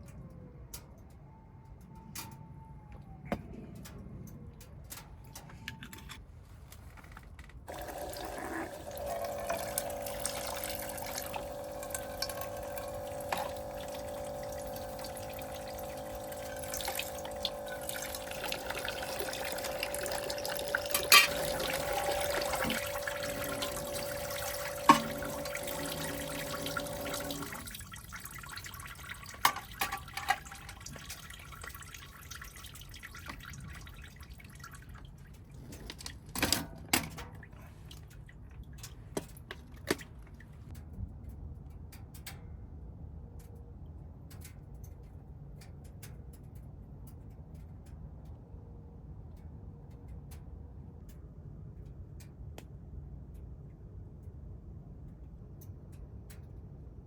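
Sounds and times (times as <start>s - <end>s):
steady hum: 7.7s - 31.6s
water running from tap: 7.7s - 35.1s
water drips: 7.7s - 36.4s, 37.0s - 40.8s.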